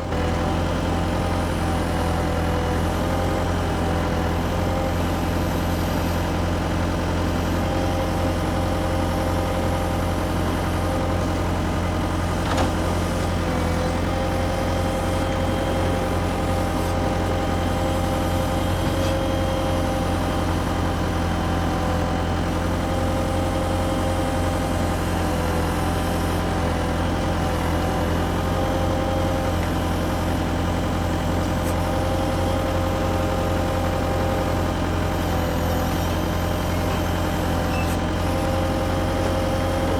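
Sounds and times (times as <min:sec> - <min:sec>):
heavy engine idling: 0:00.0 - 0:39.9.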